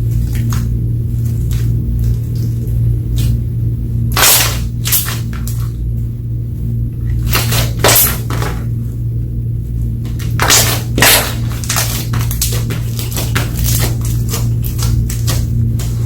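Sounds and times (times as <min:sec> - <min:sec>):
steady low hum: 0:00.0 - 0:16.0
slime squished by hand: 0:04.1 - 0:05.8, 0:10.1 - 0:16.0.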